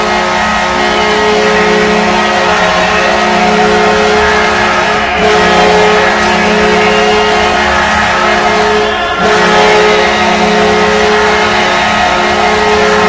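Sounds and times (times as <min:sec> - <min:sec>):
goal horn blast: 0:00.0 - 0:13.0
noisy background: 0:00.0 - 0:13.0.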